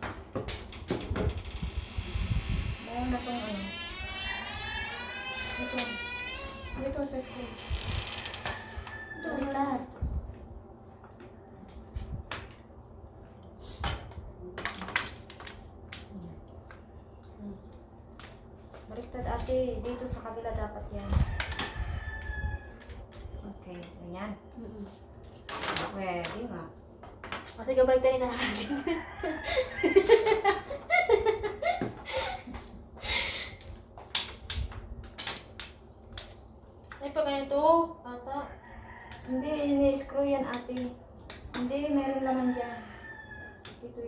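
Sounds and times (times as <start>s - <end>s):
people laughing: 28.4s - 32.4s.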